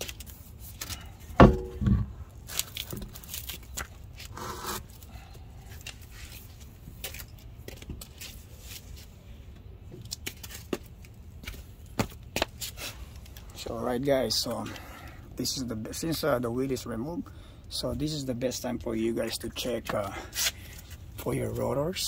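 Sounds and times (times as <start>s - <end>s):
heavy clunks: 1.4s - 2.2s.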